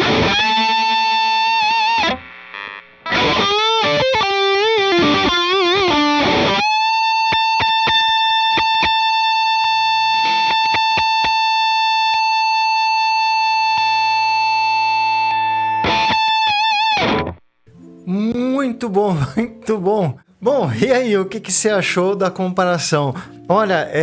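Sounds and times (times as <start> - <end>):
overdriven electric guitar: 0.0 - 17.4.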